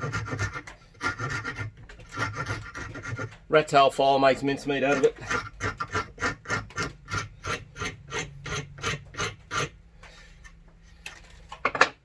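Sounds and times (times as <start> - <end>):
file rasping on plywood: 0.0 - 3.5, 4.6 - 10.5.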